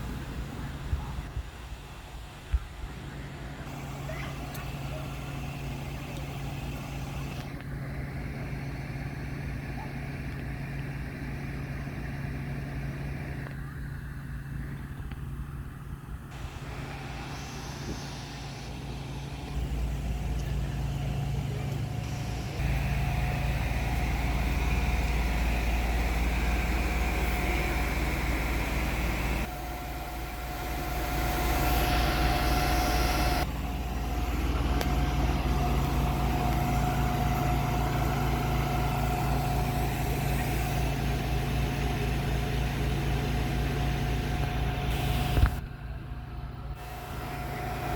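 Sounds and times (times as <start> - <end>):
fire engine running: 0.0 - 47.9
steady whine: 0.0 - 47.9.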